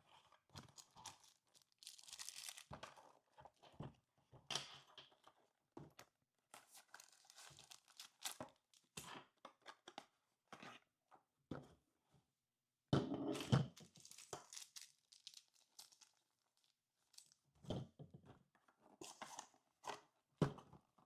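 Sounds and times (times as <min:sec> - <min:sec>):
packaging rustling and crinkling: 0:00.6 - 0:02.8, 0:06.6 - 0:08.8, 0:13.8 - 0:17.4.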